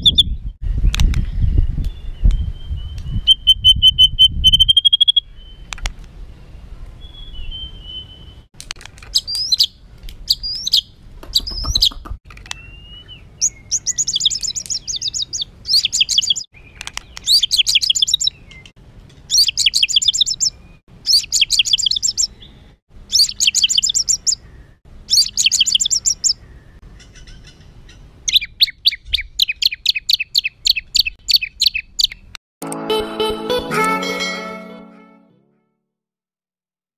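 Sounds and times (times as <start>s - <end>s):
bird singing chattering song: 0.0s - 5.7s, 9.1s - 18.7s, 19.3s - 32.3s.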